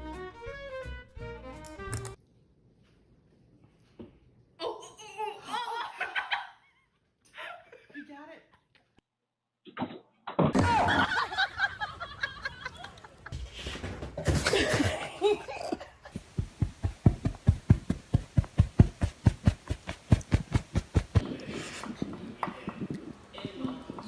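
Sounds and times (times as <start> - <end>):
people laughing: 5.3 - 6.7, 10.6 - 13.4, 14.4 - 16.3
fast regular thumping: 16.1 - 24.0.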